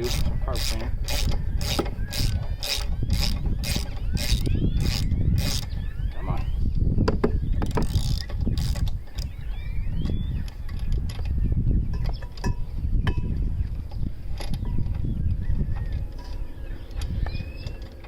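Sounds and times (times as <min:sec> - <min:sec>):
ratcheting wrench: 0:00.0 - 0:05.7, 0:07.6 - 0:09.3.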